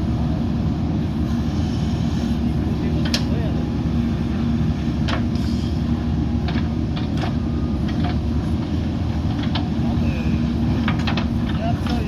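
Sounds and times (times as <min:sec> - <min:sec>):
diesel engine running: 0:00.0 - 0:12.0.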